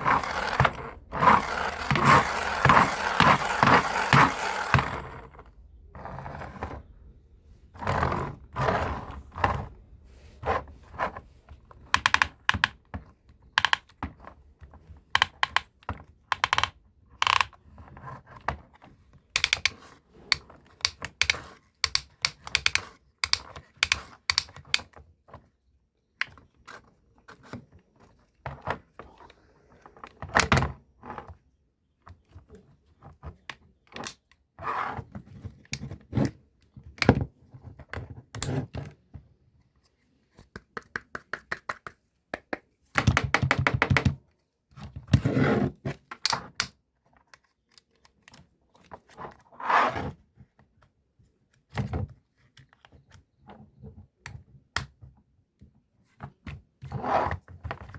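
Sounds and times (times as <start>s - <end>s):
short rattling bursts: 0.0s - 5.4s
hard objects clicking and knocking: 0.0s - 5.5s, 40.6s - 44.2s.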